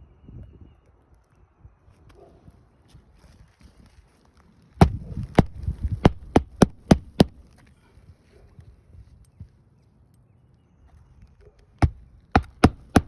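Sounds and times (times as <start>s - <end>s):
hammer striking nail: 4.8s - 7.5s, 11.8s - 13.0s.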